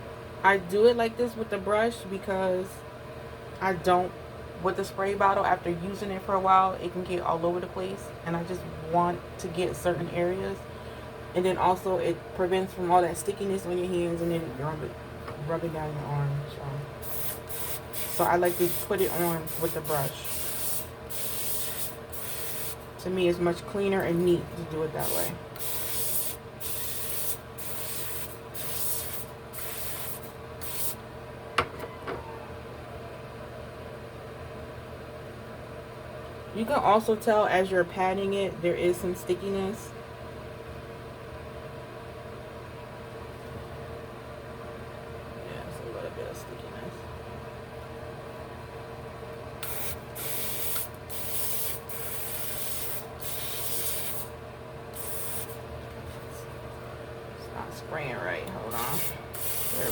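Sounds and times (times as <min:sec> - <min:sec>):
short hissing strokes: 0:17.0 - 0:22.8, 0:25.0 - 0:31.0, 0:49.6 - 0:54.3, 0:55.0 - 0:55.6, 0:58.7 - 0:59.9.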